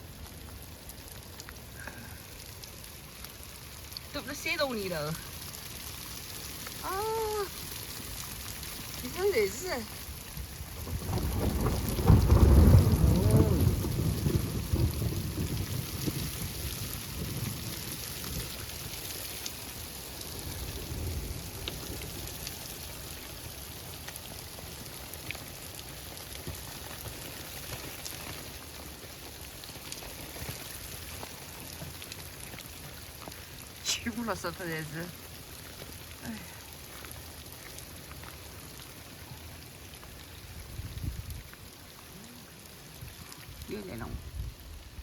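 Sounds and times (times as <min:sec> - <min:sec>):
rain falling and dripping: 0:00.0 - 0:45.0
thunder rolling: 0:10.4 - 0:18.7.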